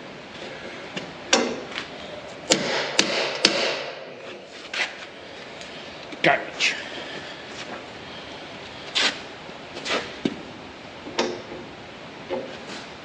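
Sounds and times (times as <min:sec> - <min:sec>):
hammer striking metal: 0:02.5 - 0:04.0.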